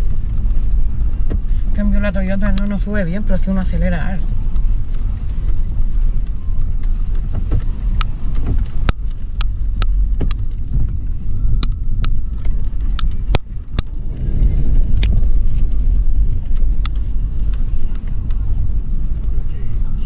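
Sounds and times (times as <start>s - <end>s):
engine low rumble: 0.0s - 20.0s
sharp knocks and clicks: 7.2s - 11.0s.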